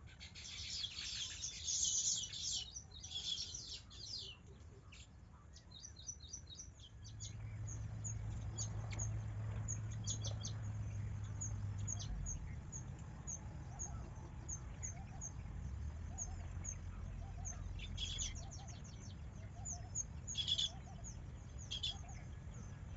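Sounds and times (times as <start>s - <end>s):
small birds chirping: 0.0s - 22.9s
steady low rumble: 6.9s - 22.9s.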